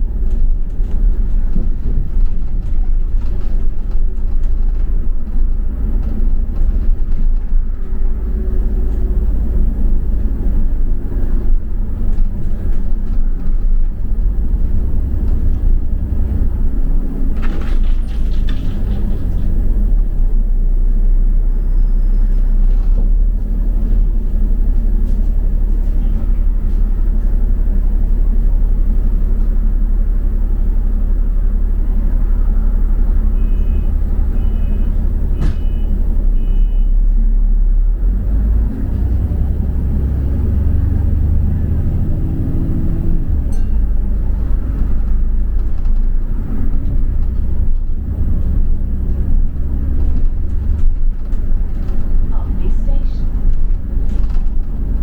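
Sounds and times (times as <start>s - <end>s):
bus engine rumble: 0.0s - 55.0s
short beeps: 33.4s - 37.0s.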